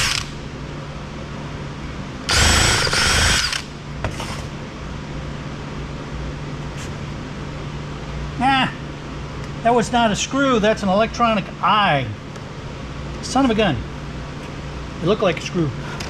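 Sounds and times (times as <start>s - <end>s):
electric screwdriver whining: 0.0s - 0.3s, 2.3s - 3.6s
low steady hum: 0.0s - 16.0s.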